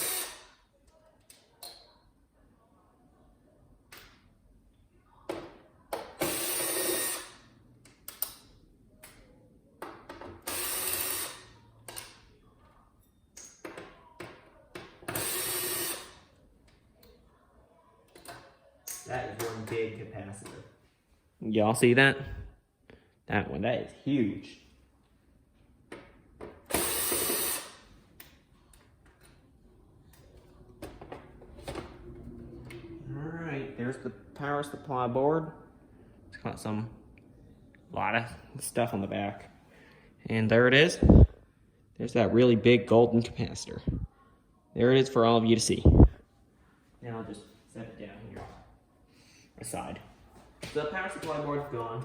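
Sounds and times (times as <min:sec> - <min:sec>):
power drill driving screws: 0:00.0 - 0:00.5, 0:06.2 - 0:07.4, 0:10.4 - 0:11.5, 0:15.1 - 0:16.2, 0:26.7 - 0:27.8
faint clicks and knocks of parts: 0:00.8 - 0:02.1, 0:07.8 - 0:10.6, 0:18.0 - 0:21.0, 0:28.0 - 0:33.0.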